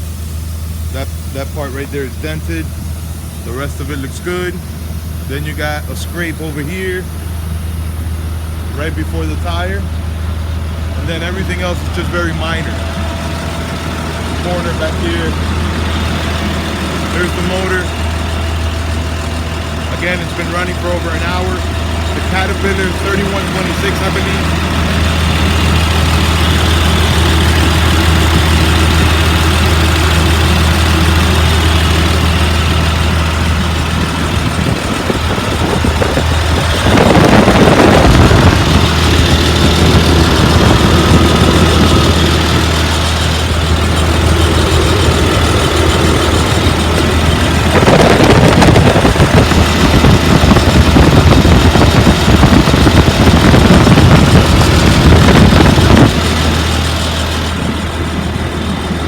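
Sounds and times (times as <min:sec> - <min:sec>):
diesel engine idling: 0:00.0 - 0:59.0
loud rushing noise: 0:32.5 - 0:57.4.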